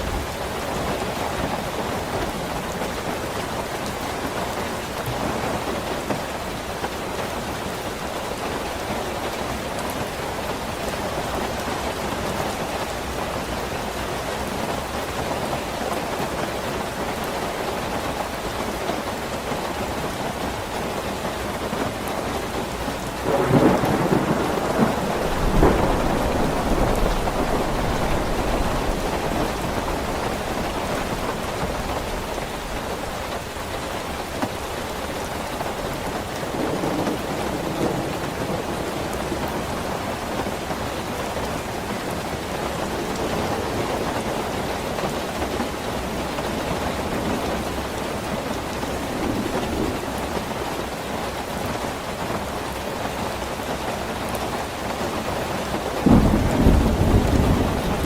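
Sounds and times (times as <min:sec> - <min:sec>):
steady rain: 0:00.0 - 0:58.0
thunder rumbling: 0:22.4 - 0:46.2, 0:56.0 - 0:58.0.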